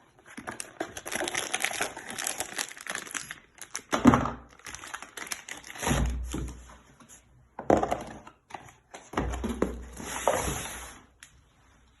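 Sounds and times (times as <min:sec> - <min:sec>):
packaging rustling: 0:00.2 - 0:03.9, 0:04.5 - 0:05.8.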